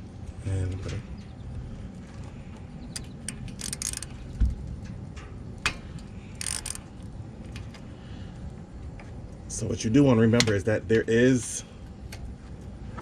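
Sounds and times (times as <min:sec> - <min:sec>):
socket wrench clicking: 0:03.0 - 0:04.1, 0:06.4 - 0:06.8
metal clinking: 0:03.2 - 0:04.2, 0:06.4 - 0:06.9.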